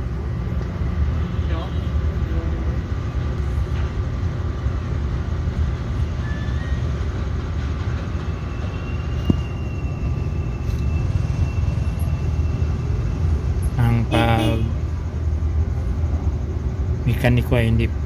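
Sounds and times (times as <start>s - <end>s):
low rumbling background noise: 0.0s - 18.0s
faint high whine: 8.3s - 18.0s.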